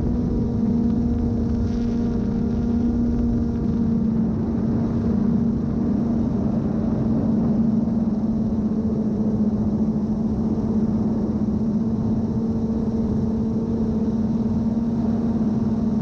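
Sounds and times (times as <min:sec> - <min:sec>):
drone propellers humming: 0:00.0 - 0:16.0.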